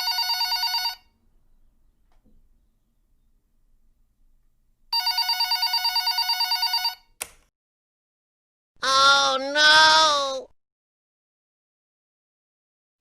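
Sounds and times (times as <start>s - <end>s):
telephone bell ringing: 0.0s - 1.2s, 4.9s - 7.1s.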